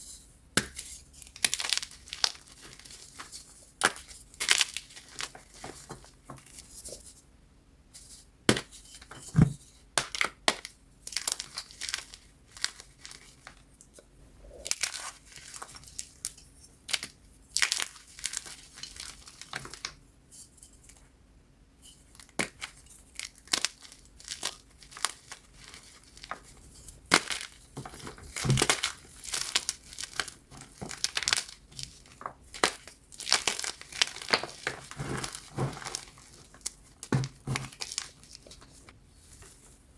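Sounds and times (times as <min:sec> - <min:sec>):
chalk crunching and cracking: 0:22.2 - 0:39.8.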